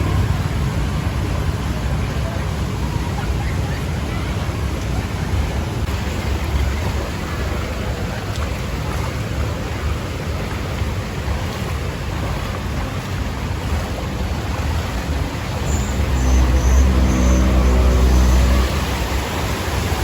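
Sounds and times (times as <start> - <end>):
traffic and water rushing: 0.0 - 20.0
vehicle engine approaching: 5.4 - 20.0.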